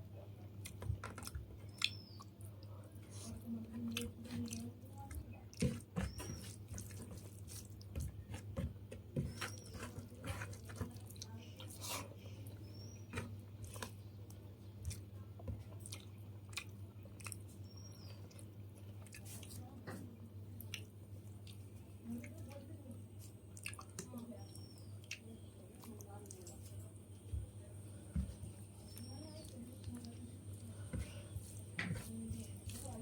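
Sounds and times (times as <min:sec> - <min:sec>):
person chewing food: 0:00.6 - 0:19.6, 0:20.6 - 0:22.4, 0:23.2 - 0:24.1, 0:24.7 - 0:26.8.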